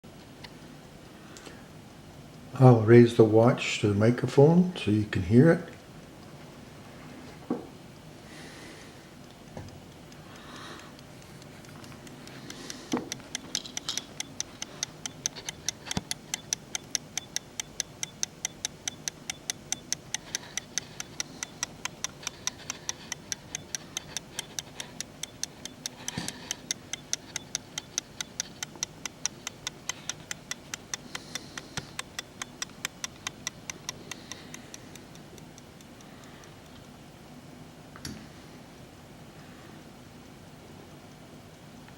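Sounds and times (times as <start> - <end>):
watch ticking: 8.0 - 37.2.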